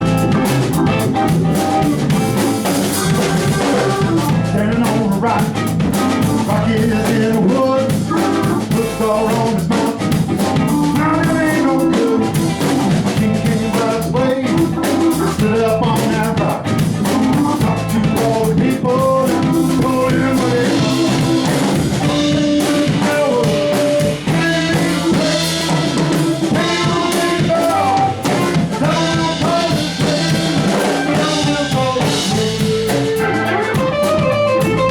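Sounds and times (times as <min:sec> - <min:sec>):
pitched instruments: 0:00.0 - 0:04.8, 0:16.8 - 0:34.9
drum kit playing steady beat: 0:00.0 - 0:34.9.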